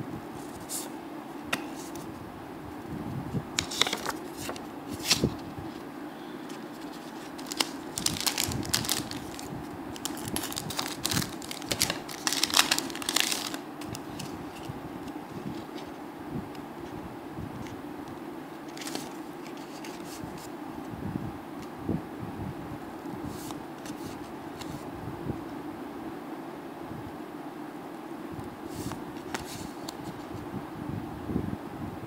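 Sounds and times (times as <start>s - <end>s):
foil pack tearing and crinkling: 6.9s - 14.4s.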